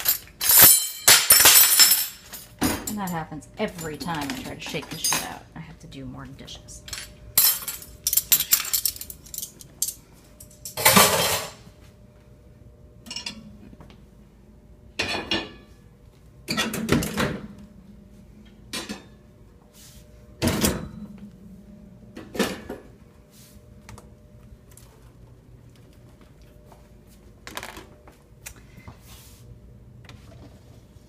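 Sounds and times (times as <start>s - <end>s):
dishes clattering: 10.7s - 11.6s, 15.0s - 15.7s.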